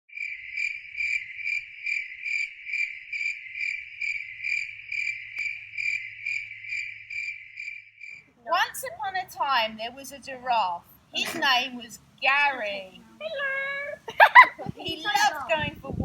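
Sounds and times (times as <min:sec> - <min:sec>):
cricket chirping: 0:00.1 - 0:08.3.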